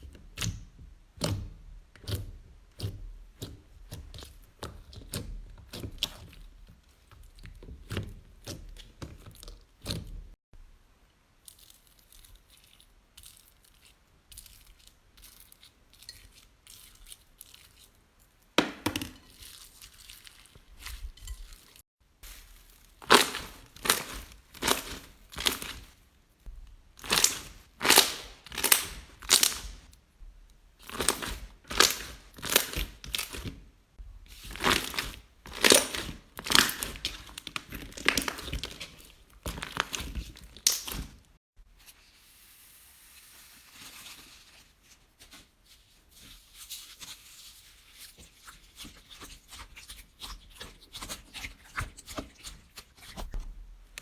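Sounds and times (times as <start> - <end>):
slime squishing by hand: 11.5 - 41.4
soft handling: 19.2 - 33.7.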